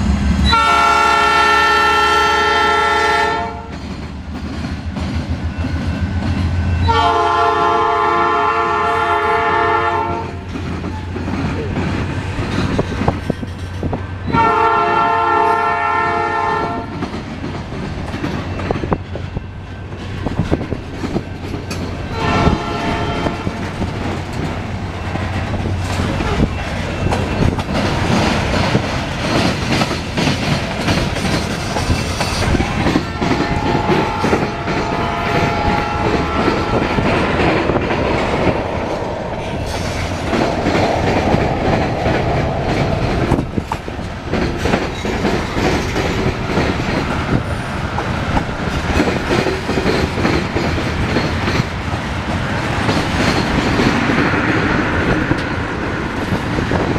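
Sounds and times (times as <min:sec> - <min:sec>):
train horn blasts: 0:00.0 - 0:03.8, 0:06.7 - 0:10.4, 0:14.3 - 0:17.0, 0:22.1 - 0:23.8, 0:32.8 - 0:37.2
train wheels clacking on rails: 0:00.0 - 0:56.9.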